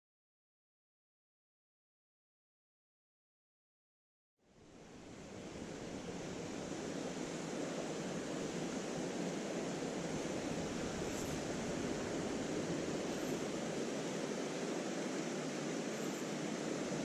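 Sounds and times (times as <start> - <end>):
stream water rushing: 4.5 - 17.0.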